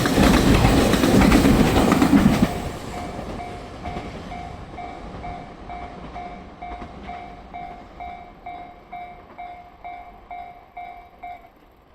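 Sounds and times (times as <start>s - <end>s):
freight train rumble: 0.0s - 11.9s
level-crossing warning bell: 2.4s - 11.7s.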